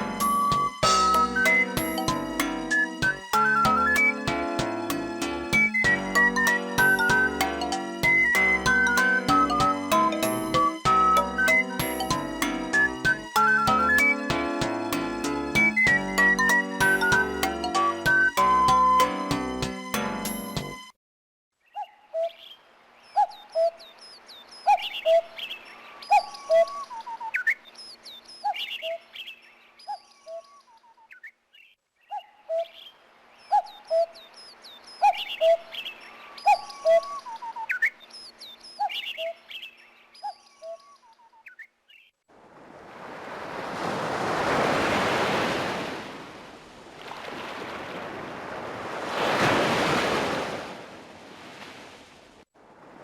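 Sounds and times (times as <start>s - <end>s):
bird calls and whistles ringtone: 0.0s - 14.6s, 15.5s - 19.1s, 21.7s - 31.3s, 32.1s - 41.7s
ocean surf waves: 42.3s - 53.0s.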